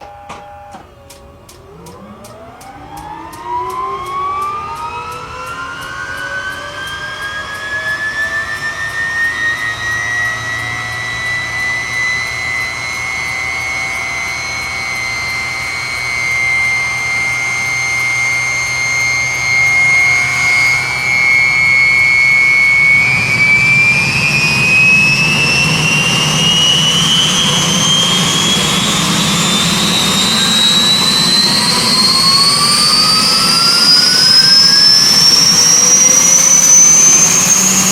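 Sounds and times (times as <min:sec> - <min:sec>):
turbine engine whine: 0:00.0 - 0:37.9
deep engine rumble: 0:12.2 - 0:37.9.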